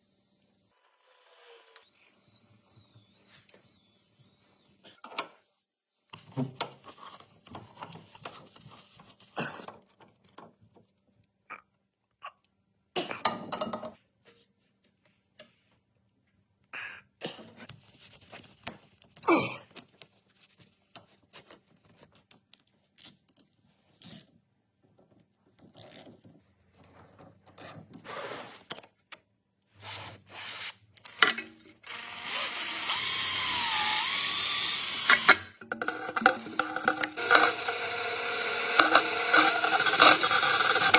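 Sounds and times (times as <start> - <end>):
power tool running: 31.1 - 40.9.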